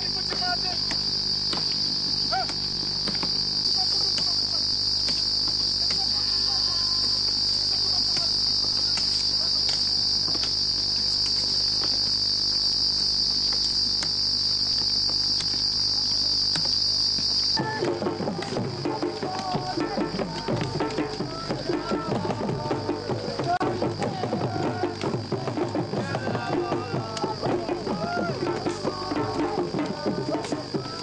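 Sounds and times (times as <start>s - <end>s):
insects trilling: 0.0s - 31.0s
music with drumming: 17.6s - 31.0s.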